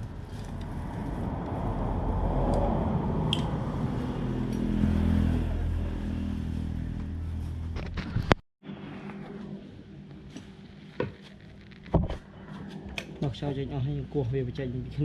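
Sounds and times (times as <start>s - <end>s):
engine running: 0.0s - 9.2s.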